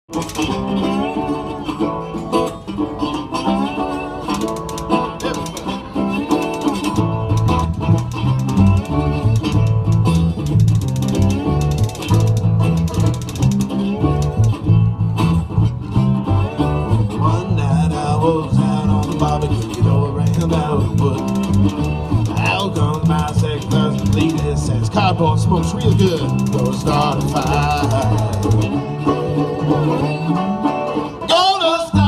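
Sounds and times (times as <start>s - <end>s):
country band plucked strings: 0.1s - 32.0s
bass line: 5.8s - 30.8s.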